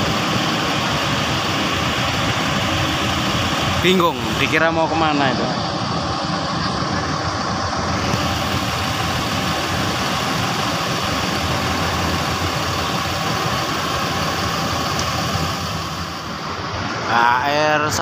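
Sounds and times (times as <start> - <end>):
bus diesel engine idling: 0.0 - 18.0.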